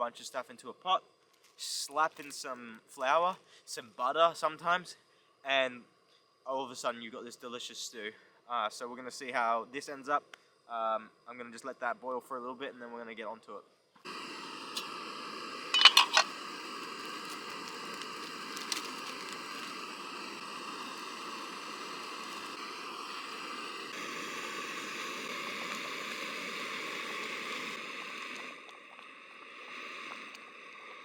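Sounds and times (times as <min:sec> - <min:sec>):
stew bubbling in a pot: 0:14.1 - 0:31.0.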